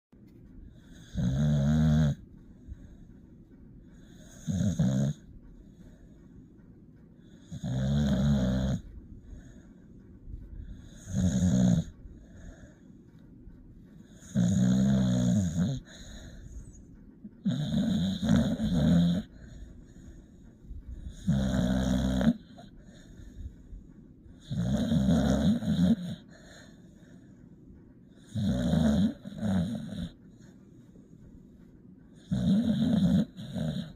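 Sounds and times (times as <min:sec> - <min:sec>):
puppy snoring: 0:00.5 - 0:03.1, 0:03.8 - 0:06.2, 0:07.2 - 0:13.0, 0:14.0 - 0:27.3, 0:28.1 - 0:30.8, 0:32.1 - 0:33.9.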